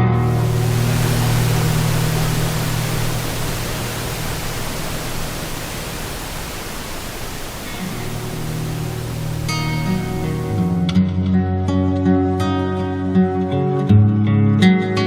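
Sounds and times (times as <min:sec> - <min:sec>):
falling water rushing: 0:00.0 - 0:10.9
soft guitar music: 0:07.7 - 0:15.0.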